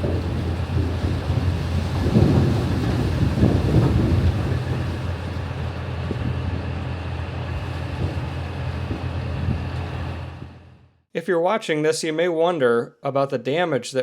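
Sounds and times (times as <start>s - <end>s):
diesel machinery droning: 0.0s - 11.0s.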